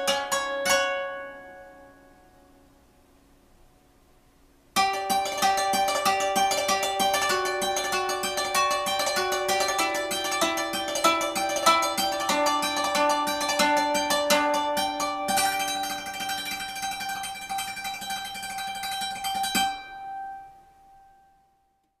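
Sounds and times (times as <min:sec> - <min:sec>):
plucked string notes: 0:00.0 - 0:02.7, 0:04.8 - 0:21.4.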